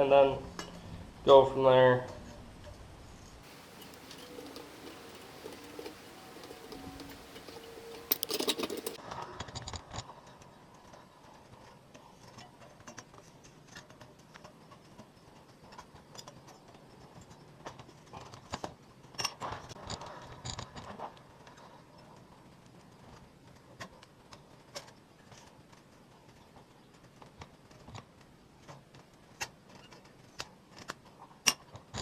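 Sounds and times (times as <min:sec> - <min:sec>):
hand tools clicking on metal: 0:03.4 - 0:09.0.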